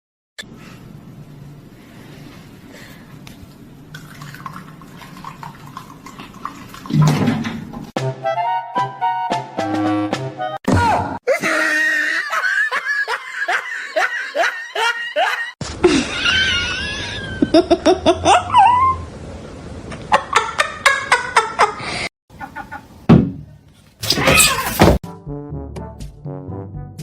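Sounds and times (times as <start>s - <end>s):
people laughing hard: 11.3s - 18.5s.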